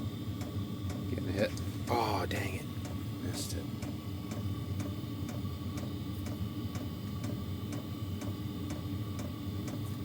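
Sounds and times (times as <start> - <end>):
heater blower hum: 0.0 - 10.0
fuel pump ticking: 0.4 - 9.9.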